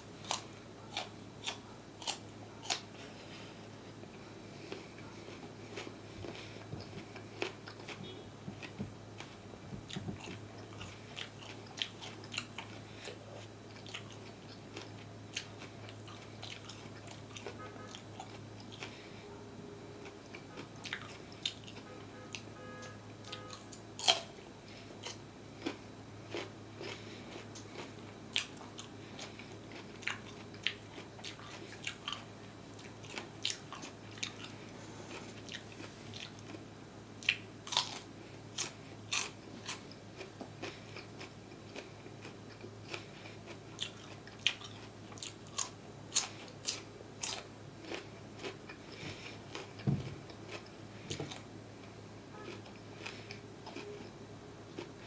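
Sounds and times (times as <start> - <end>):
crunchy food bites: 0.2 - 2.9, 37.2 - 51.5
chewing: 0.2 - 19.2, 20.0 - 22.4, 23.3 - 55.0.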